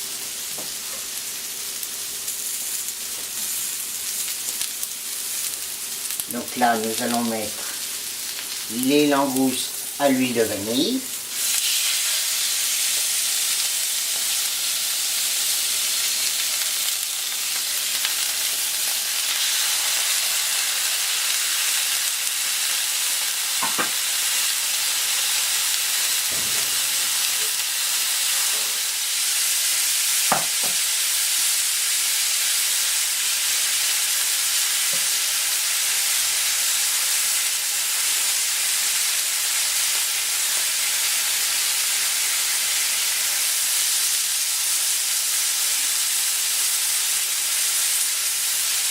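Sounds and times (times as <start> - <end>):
food sizzling in oil: 0.0 - 48.9
brief sharp cooking sounds: 23.6 - 24.1, 26.0 - 29.2.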